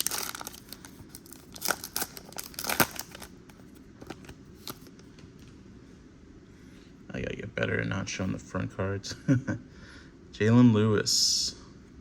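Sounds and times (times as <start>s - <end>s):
wrapper tearing and crinkling: 0.0s - 3.3s.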